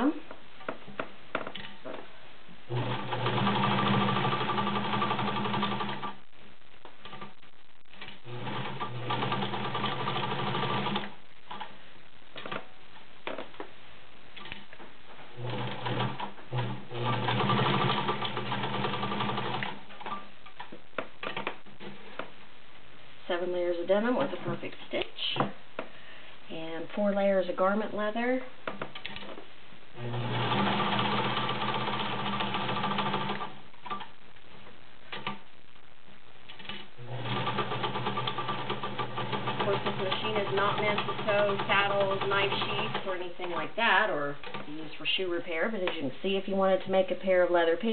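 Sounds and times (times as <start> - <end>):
sewing machine stitching: 2.7 - 6.2, 8.3 - 11.1, 15.4 - 20.2, 30.0 - 34.0, 37.1 - 43.2.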